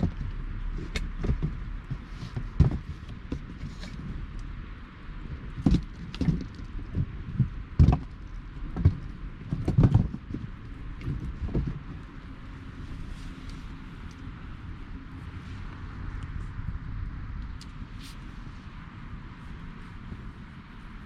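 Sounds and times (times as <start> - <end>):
steady low hiss: 11.8 - 21.0.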